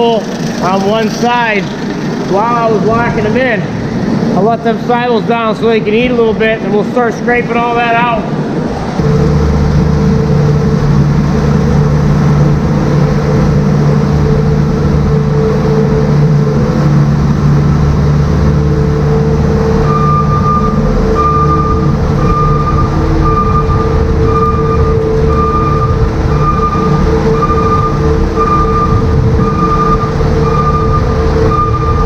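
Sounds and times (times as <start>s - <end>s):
farm machine engine running: 0.0s - 32.0s
reverse warning beeper: 18.5s - 32.0s.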